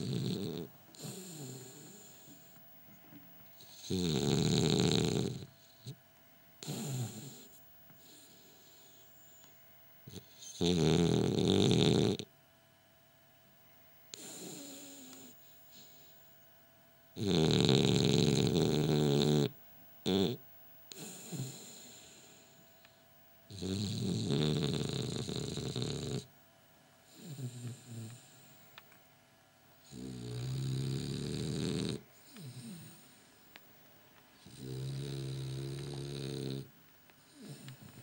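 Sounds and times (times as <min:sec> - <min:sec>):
dog snoring: 0:00.0 - 0:02.6, 0:03.6 - 0:06.0, 0:06.6 - 0:12.3, 0:14.1 - 0:16.3, 0:17.2 - 0:22.7, 0:23.5 - 0:26.3, 0:27.1 - 0:28.8, 0:29.8 - 0:33.3, 0:34.4 - 0:38.0
soft dog breathing: 0:00.0 - 0:03.0, 0:06.6 - 0:10.5, 0:29.8 - 0:33.5.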